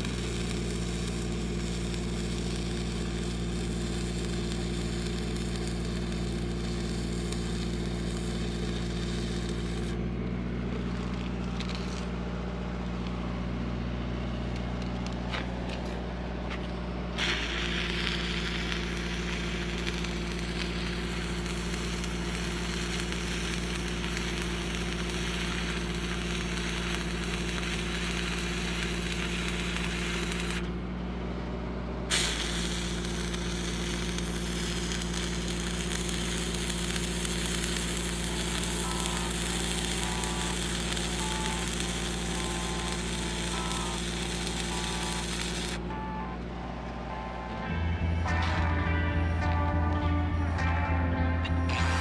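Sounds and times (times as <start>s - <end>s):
welding arc crackling: 0.0s - 12.2s, 17.2s - 30.8s, 32.1s - 45.9s, 51.7s - 52.0s
welder engine drone: 0.0s - 52.0s.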